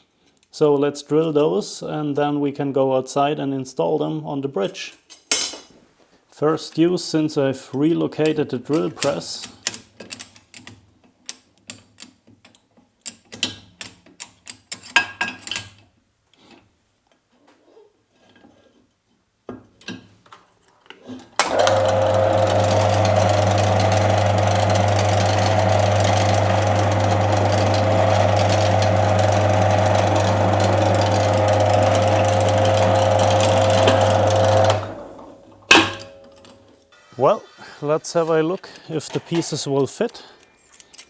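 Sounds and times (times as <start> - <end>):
drill press humming and whining: 21.4 - 35.6.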